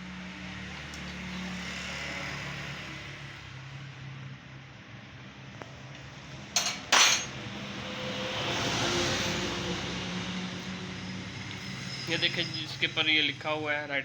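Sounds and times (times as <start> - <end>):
metal parts clinking: 6.6 - 7.4.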